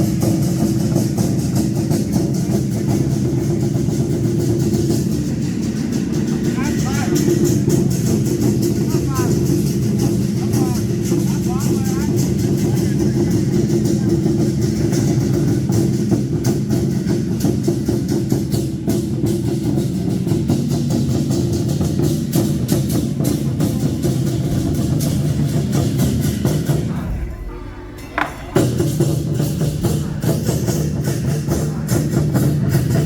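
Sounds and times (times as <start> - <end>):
percussion band playing drums: 0.0 - 33.0.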